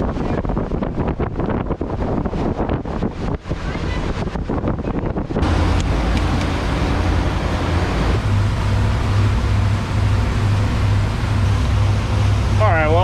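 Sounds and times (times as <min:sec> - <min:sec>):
wind and water hiss: 0:00.0 - 0:13.0
boat engines humming: 0:05.4 - 0:13.0.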